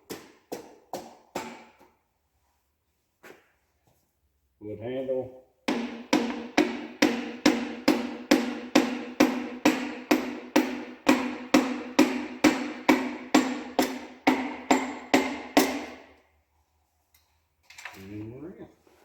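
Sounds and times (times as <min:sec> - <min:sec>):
hammer handle tapping piston: 0:05.7 - 0:16.0.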